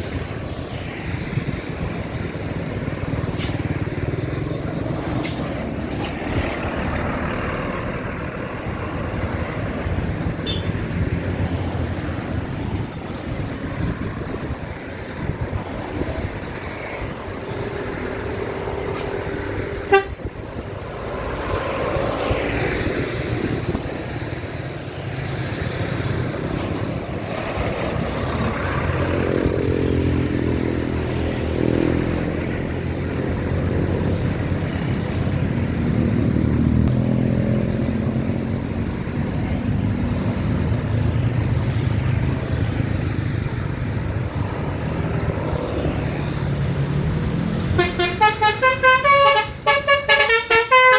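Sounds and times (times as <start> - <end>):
bus engine rumble: 0.0 - 50.9
musical bus horn: 19.8 - 20.3, 47.7 - 50.9.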